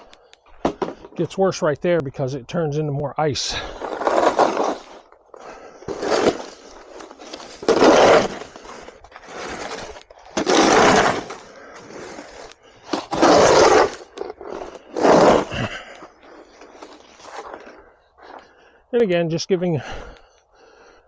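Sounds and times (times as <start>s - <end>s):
snow shovel scraping pavement: 3.3s - 18.6s.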